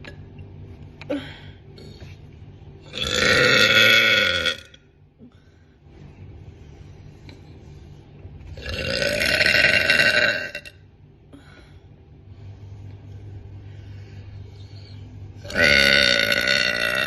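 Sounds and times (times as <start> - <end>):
woman burping loudly: 2.9 - 4.8, 8.6 - 10.8, 15.4 - 17.0.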